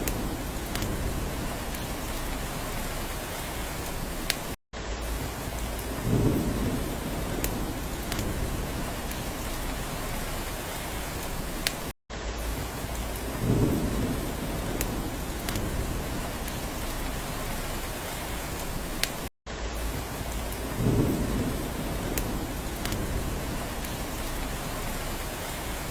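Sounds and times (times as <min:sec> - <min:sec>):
sharp drip ticks: 0:00.0 - 0:02.3, 0:07.3 - 0:08.4, 0:14.5 - 0:15.7, 0:22.0 - 0:24.5
rain on a roof: 0:00.0 - 0:25.9.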